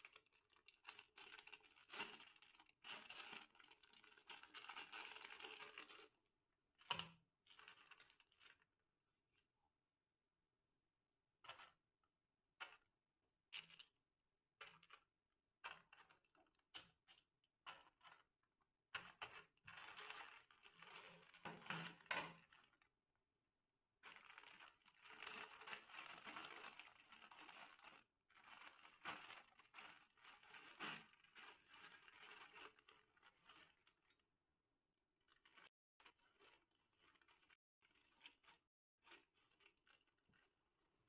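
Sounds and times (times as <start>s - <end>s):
plastic packets crinkling: 0.0s - 6.1s.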